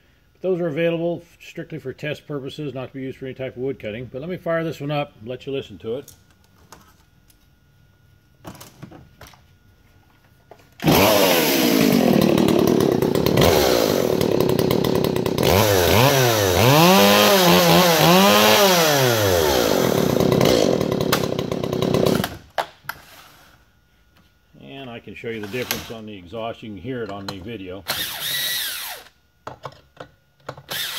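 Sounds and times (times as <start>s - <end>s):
chainsaw revving: 10.8s - 22.4s.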